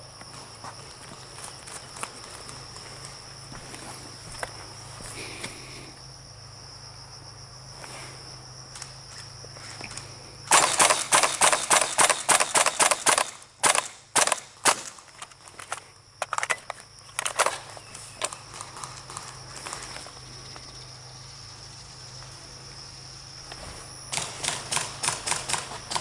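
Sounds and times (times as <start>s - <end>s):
high insect drone: 0.0s - 26.0s
airsoft guns firing: 10.5s - 15.0s, 24.1s - 26.0s.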